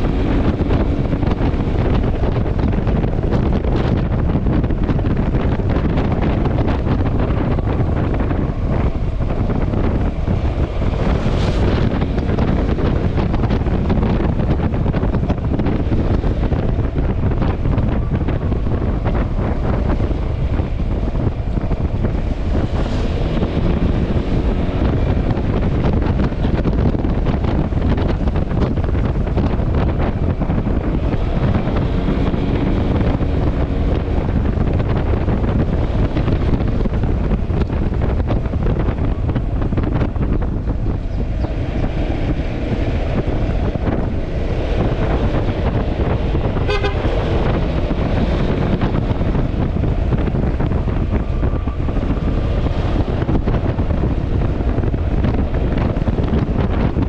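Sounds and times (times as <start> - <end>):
road noise: 0.0 - 57.0
wind buffeting microphone: 0.0 - 57.0
horn toot: 46.6 - 47.6.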